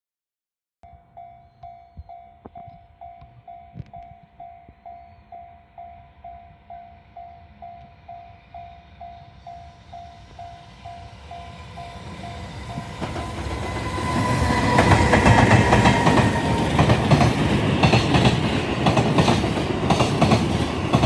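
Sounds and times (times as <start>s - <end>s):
freight train approaching: 4.3s - 21.0s.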